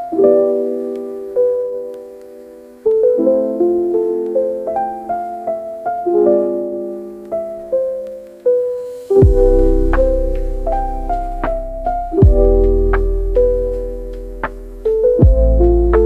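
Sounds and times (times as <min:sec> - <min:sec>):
gentle piano melody: 0:00.0 - 0:16.0
deep bass note: 0:09.2 - 0:13.6.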